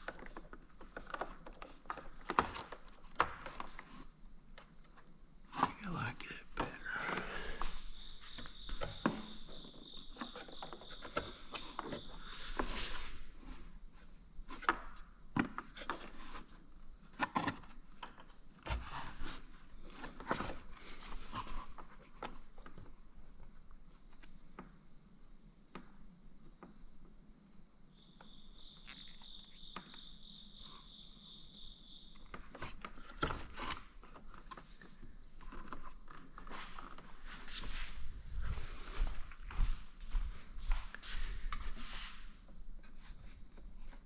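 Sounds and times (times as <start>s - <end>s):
lower insect trill: 5.2s - 15.2s, 23.0s - 33.0s
high-pitched insect trill: 7.5s - 13.2s, 27.7s - 32.4s.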